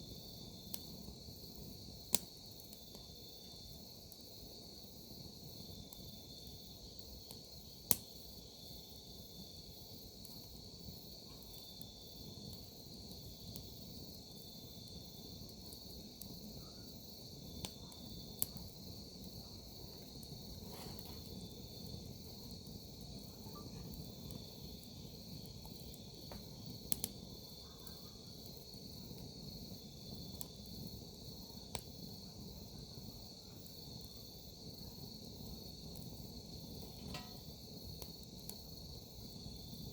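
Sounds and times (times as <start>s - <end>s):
campfire burning: 0.0s - 39.9s
crickets chirping: 0.0s - 39.9s
firewood crackling pops: 2.0s - 3.1s, 6.9s - 8.2s, 17.4s - 22.2s, 22.8s - 28.0s, 30.0s - 32.0s, 35.9s - 38.7s.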